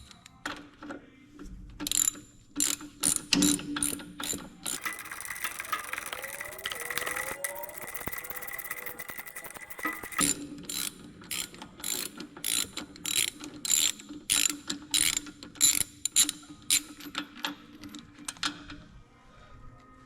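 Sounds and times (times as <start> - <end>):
ratchet wrench clicking: 1.8 - 17.4.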